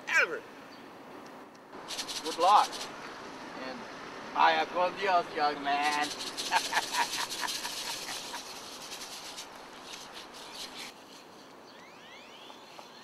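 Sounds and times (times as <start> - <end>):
rain stick rattling: 1.8 - 2.9, 5.8 - 10.8
bird chirps: 5.8 - 13.0.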